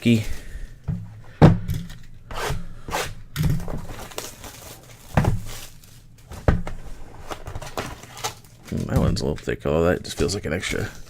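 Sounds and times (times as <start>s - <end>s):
wrappers rustling: 3.8s - 6.3s, 7.2s - 9.4s.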